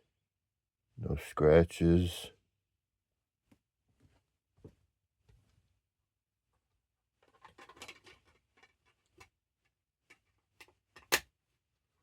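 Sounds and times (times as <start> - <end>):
plastic case rustling and clicking: 7.2 - 9.3.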